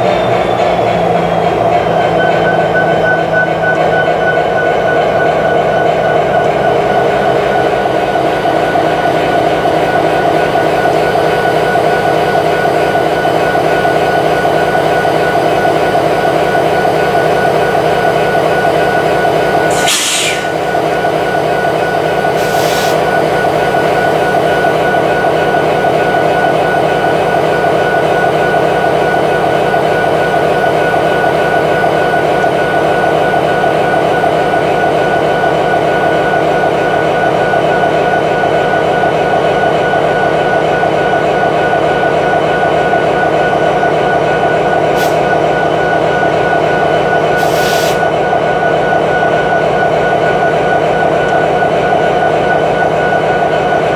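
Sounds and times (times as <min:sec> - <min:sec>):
diesel locomotive engine running: 0:00.0 - 0:53.9
short air hisses: 0:19.7 - 0:20.6, 0:22.4 - 0:23.0, 0:47.4 - 0:48.0.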